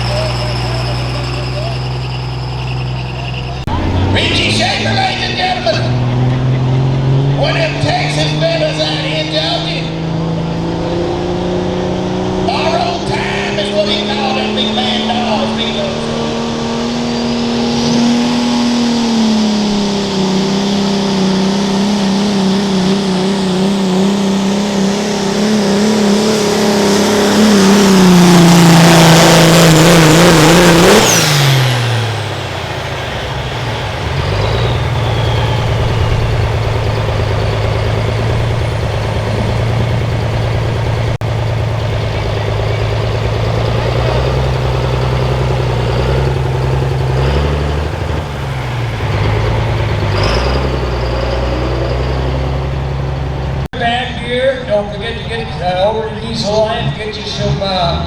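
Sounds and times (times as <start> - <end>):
engine idling: 0.0 - 10.6, 19.7 - 57.9
diesel engine at full throttle: 0.0 - 58.0.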